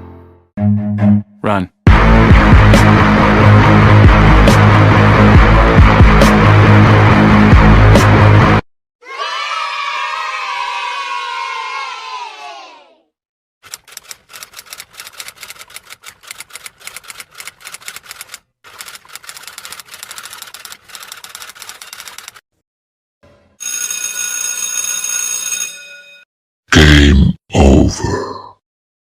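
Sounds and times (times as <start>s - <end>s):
rapid typing clicks: 13.6s - 22.4s.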